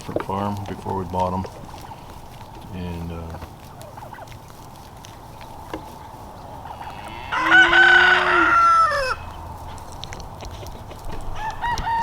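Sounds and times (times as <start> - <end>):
rooster crowing: 6.7 - 9.4, 11.4 - 12.0.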